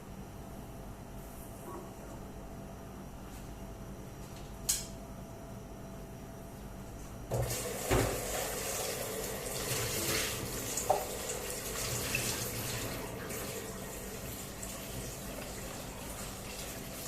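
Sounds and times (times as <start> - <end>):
tap running into sink: 7.3 - 17.0.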